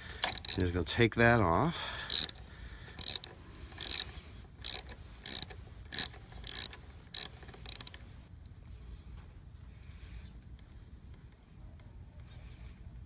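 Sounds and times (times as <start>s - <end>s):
ratchet wrench clicking: 0.2s - 0.8s, 2.1s - 2.4s, 3.0s - 8.1s.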